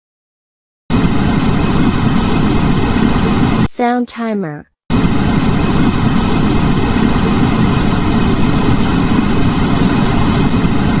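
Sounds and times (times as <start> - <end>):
low rumbling noise: 4.9 - 11.0.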